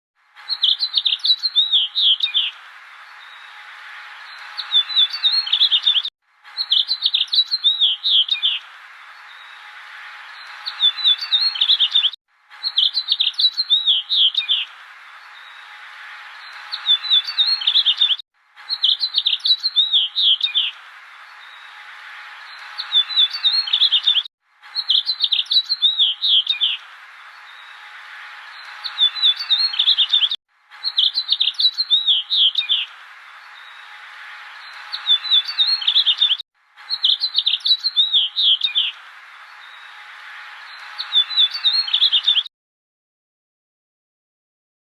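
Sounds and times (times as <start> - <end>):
small bird chirping: 4.4 - 8.6, 10.4 - 14.6, 16.5 - 20.7, 22.6 - 26.8, 28.6 - 32.9, 34.6 - 38.9.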